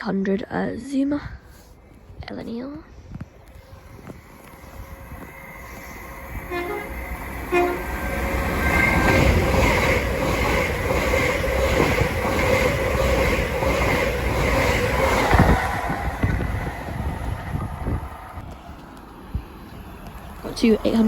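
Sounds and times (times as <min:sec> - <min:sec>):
train passing at speed: 0:03.3 - 0:21.0
train horn toots: 0:06.3 - 0:09.2.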